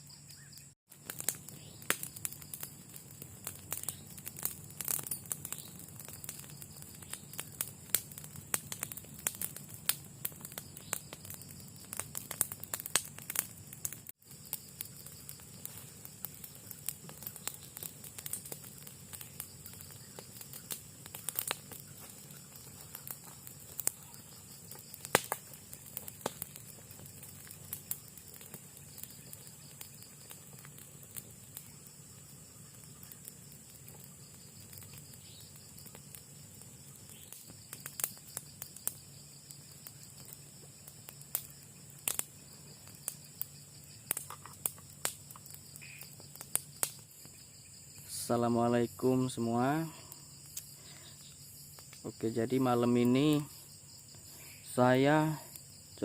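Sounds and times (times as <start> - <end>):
insects chirring: 0.0 - 56.0
sharp clicks and crackles: 0.9 - 31.8, 44.0 - 47.3.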